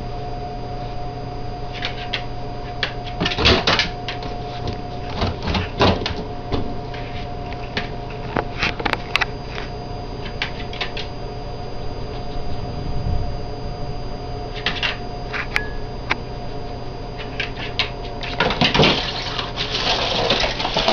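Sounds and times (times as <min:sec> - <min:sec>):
electrical hum: 0:00.0 - 0:20.9
rustling and clattering: 0:03.1 - 0:09.7, 0:17.2 - 0:20.9.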